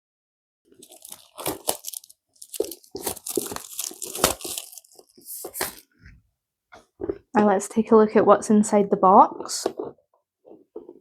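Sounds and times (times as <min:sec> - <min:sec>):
packaging rustling and tearing: 0:00.7 - 0:06.0.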